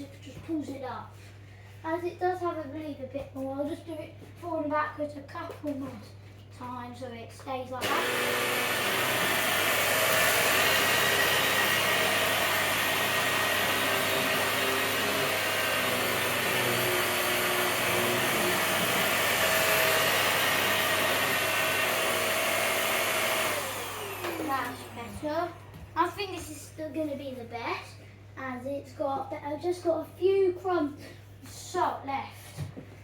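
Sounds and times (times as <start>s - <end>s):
vacuum motor winding down: 7.8s - 25.0s
vacuum cleaner running on carpet: 7.8s - 25.1s.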